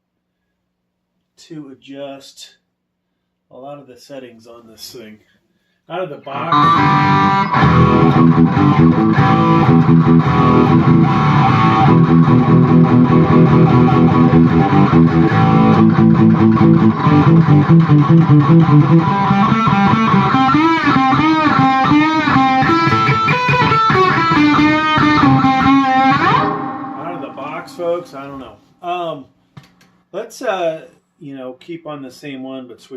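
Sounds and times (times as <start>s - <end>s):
distorted electric guitar: 6.2s - 28.6s.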